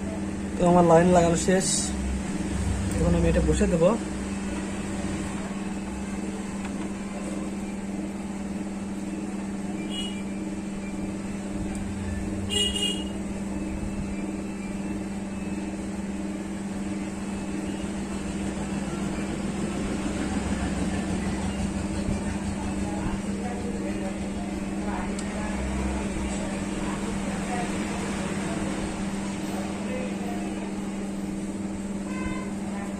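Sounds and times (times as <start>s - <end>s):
street traffic: 0.0s - 32.9s
vehicle horn toot: 9.8s - 10.2s, 12.4s - 13.2s, 32.1s - 32.6s.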